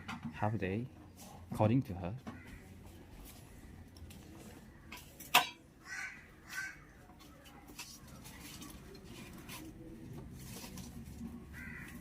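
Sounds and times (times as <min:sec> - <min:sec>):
crow cawing: 0:02.2 - 0:02.8, 0:05.8 - 0:07.0, 0:11.5 - 0:12.0.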